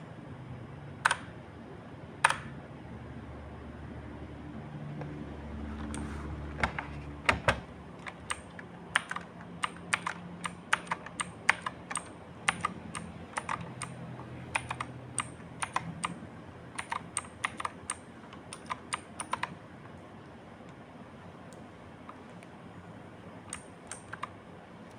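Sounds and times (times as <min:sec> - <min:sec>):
clicky mechanical keyboard typing: 0:01.0 - 0:01.4, 0:05.8 - 0:19.6, 0:23.5 - 0:24.9.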